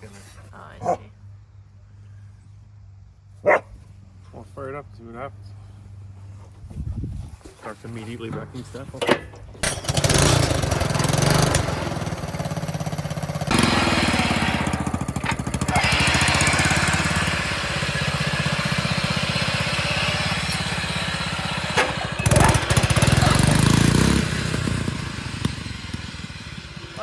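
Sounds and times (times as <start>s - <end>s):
riding lawn mower engine running: 8.0s - 27.0s.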